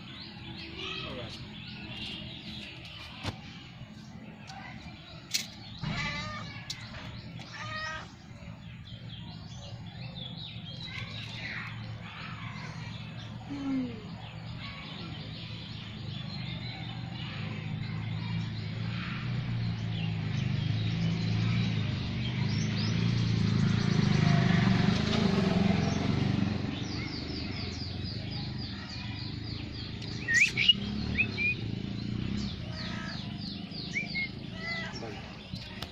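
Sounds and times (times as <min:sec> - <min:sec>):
birds chirping: 0:00.0 - 0:35.9
downward-sweeping bird chirps: 0:29.3 - 0:35.1.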